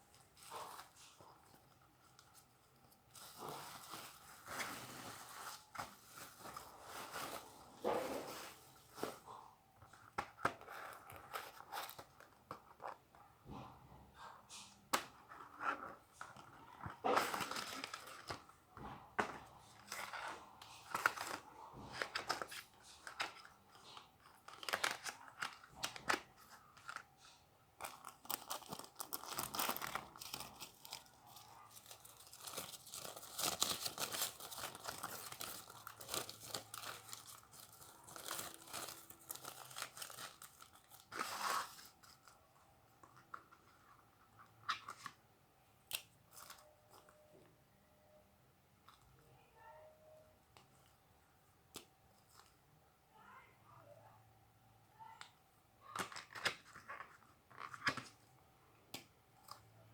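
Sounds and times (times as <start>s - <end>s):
packaging tearing and crinkling: 27.8s - 42.1s.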